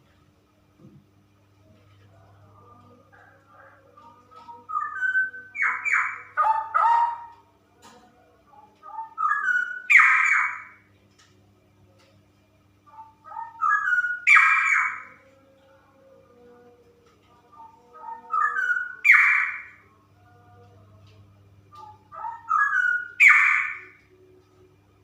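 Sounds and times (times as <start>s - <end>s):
bird warbling song: 3.1s - 7.4s, 8.6s - 10.8s, 12.9s - 15.3s, 17.3s - 19.9s, 21.7s - 24.0s.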